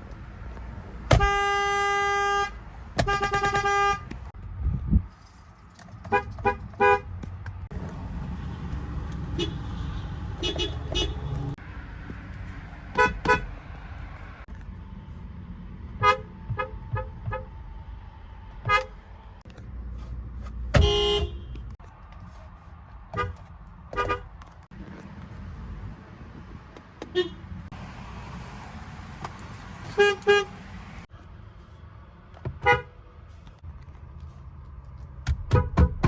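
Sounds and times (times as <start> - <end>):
car horns tooting: 1.1 - 4.3, 6.1 - 7.2, 8.6 - 11.6, 12.9 - 13.5, 16.0 - 17.6, 18.6 - 19.0, 20.7 - 21.8, 23.1 - 24.4, 27.0 - 27.6, 29.9 - 30.6, 32.6 - 33.0.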